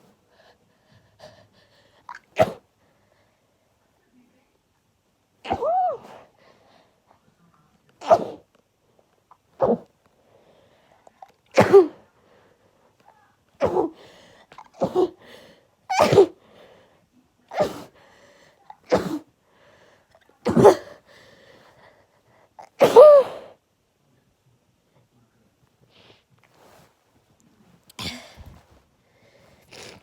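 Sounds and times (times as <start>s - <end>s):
person sneezing: 2.1s - 2.7s, 5.4s - 6.3s, 8.0s - 8.5s, 9.6s - 9.9s, 11.2s - 12.1s, 13.6s - 16.4s, 17.5s - 18.0s, 18.6s - 19.3s, 20.4s - 21.0s, 22.6s - 23.6s, 27.9s - 28.7s.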